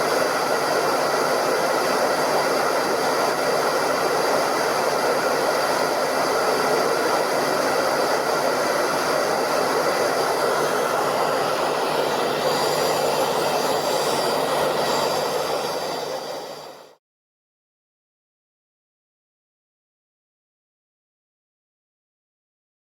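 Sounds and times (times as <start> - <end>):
hair dryer running: 0.0 - 17.0.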